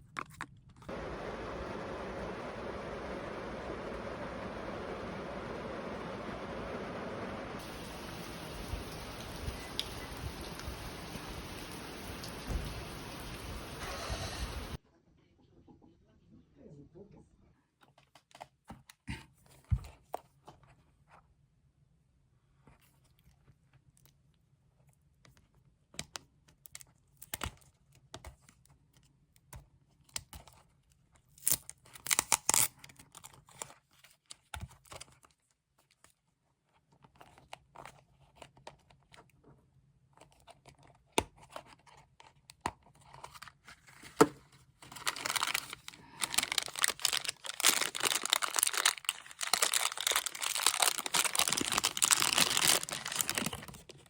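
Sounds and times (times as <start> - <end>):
packaging crinkling and tearing: 31.3 - 33.8, 42.9 - 54.0
packaging rustling: 43.0 - 54.0.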